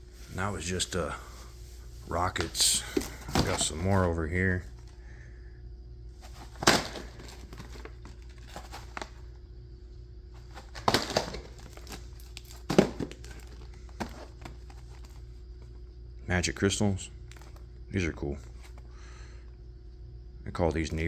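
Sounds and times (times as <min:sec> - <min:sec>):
steady low hum: 0:00.0 - 0:21.0
wrapping crinkling and rustling: 0:00.1 - 0:04.9, 0:06.2 - 0:09.4, 0:10.4 - 0:15.7.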